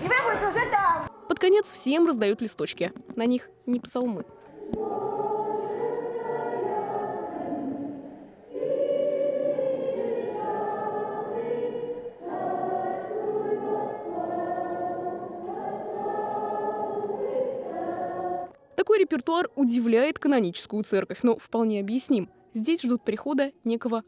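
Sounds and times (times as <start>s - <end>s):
congregation singing: 1.1s - 18.7s.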